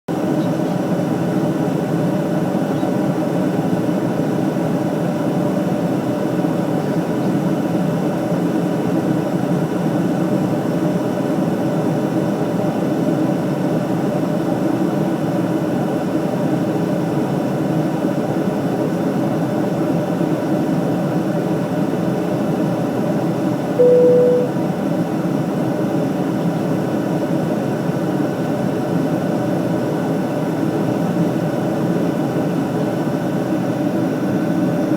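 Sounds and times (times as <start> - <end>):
brief single tone: 23.8 - 24.6.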